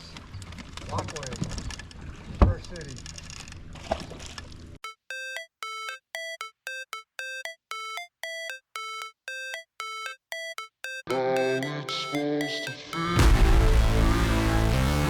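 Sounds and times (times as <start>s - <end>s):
electronic music with deep bass: 5.8s - 15.0s.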